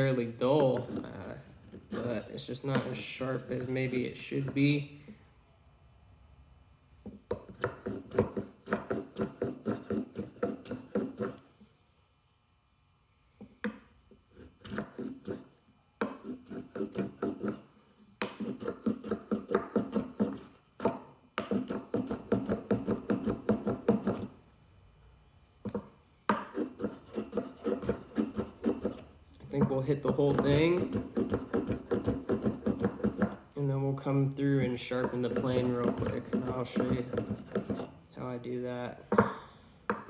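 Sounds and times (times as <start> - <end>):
hand plane strokes on wood: 7.6 - 11.4, 14.4 - 17.6, 18.2 - 24.3, 26.3 - 33.4, 34.6 - 37.9.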